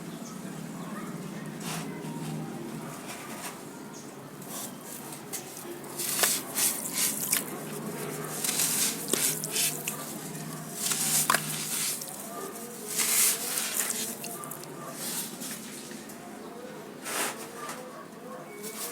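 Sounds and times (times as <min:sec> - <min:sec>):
dripping: 0:05.0 - 0:15.8.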